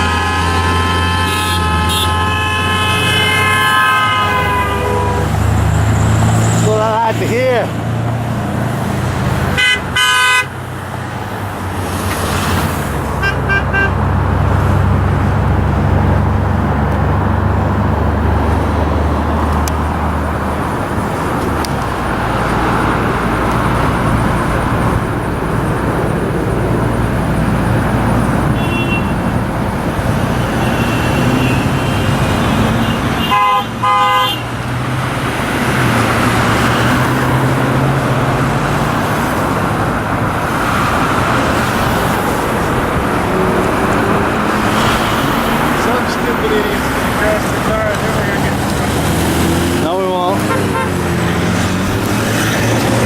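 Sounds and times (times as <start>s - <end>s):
car horns honking: 0.0s - 7.5s, 9.4s - 10.8s, 13.0s - 16.4s, 27.4s - 53.0s
freeway traffic noise: 0.0s - 53.0s.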